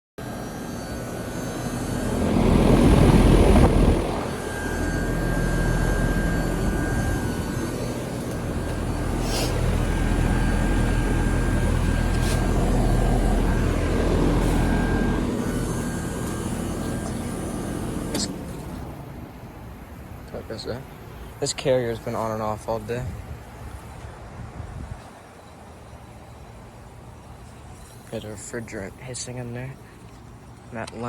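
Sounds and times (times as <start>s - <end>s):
heat pump compressor hum: 0.2s - 30.7s
condenser fan: 0.2s - 31.0s
rushing swell: 0.8s - 17.6s
short hisses: 9.2s - 9.7s.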